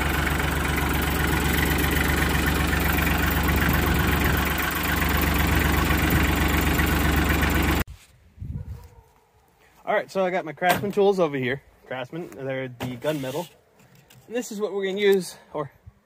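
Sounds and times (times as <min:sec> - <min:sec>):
tractor diesel engine idling: 0:00.0 - 0:07.8.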